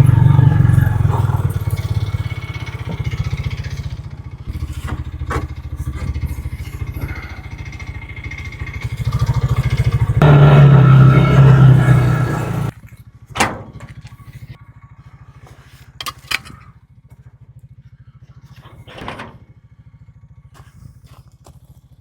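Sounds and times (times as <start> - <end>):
knocks and clatters: 0.0 - 6.6
vehicle engine running: 0.0 - 22.0.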